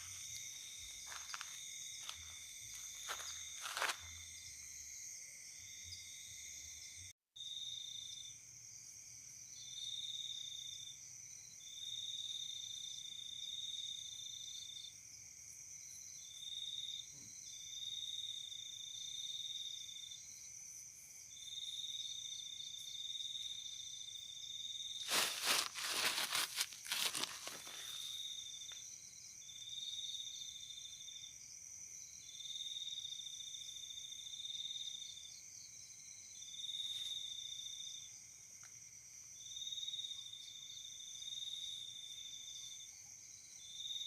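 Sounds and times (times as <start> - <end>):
high insect trill: 0.0 - 44.0
insects chirring: 0.0 - 44.0
loud crackling rustles: 25.1 - 28.0.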